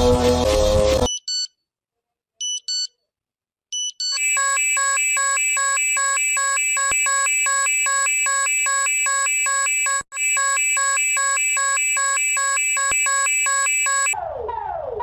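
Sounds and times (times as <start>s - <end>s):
short electronic beeps: 1.1s - 1.6s, 2.4s - 2.9s, 3.8s - 14.2s
rapidly pulsing alarm: 4.1s - 14.9s.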